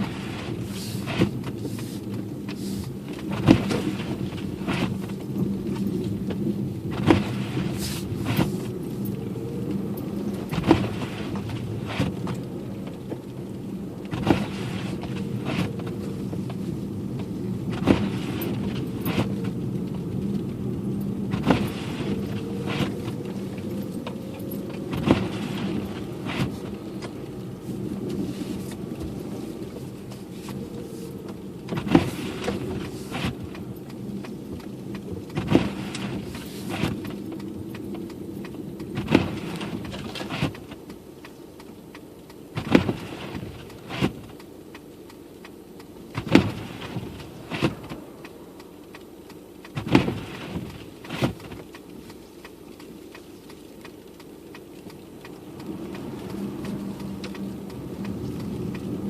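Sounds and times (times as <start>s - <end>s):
windshield wipers knocking: 0.0s - 8.7s, 14.0s - 20.2s, 21.3s - 40.9s, 42.0s - 44.9s, 46.1s - 48.3s, 49.6s - 51.8s
car engine and road hum: 0.0s - 59.0s.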